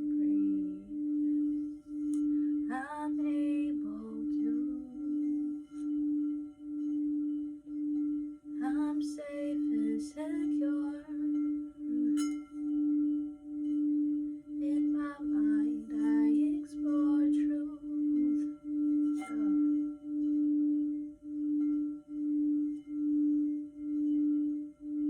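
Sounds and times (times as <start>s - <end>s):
sound bowl ringing tone: 0.0s - 25.0s
wavering high-pitched sounds: 0.0s - 25.0s.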